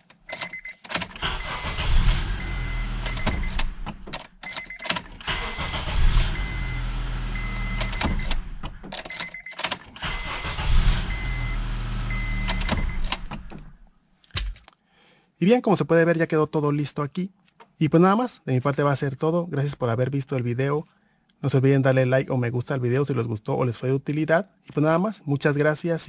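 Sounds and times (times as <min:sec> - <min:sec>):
dashboard warning chime: 0:00.3 - 0:13.8
car engine cranking and starting: 0:00.3 - 0:13.9
key clicks: 0:07.8 - 0:09.8.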